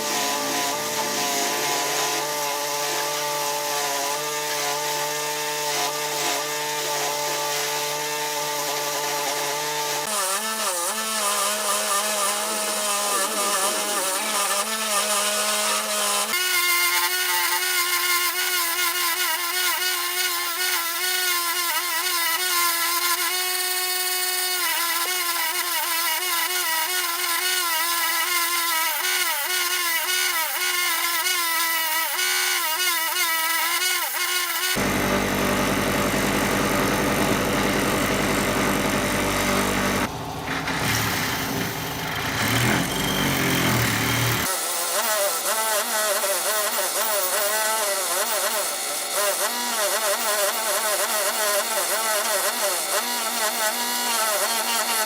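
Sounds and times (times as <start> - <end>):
power tool whining: 0.0 - 55.0.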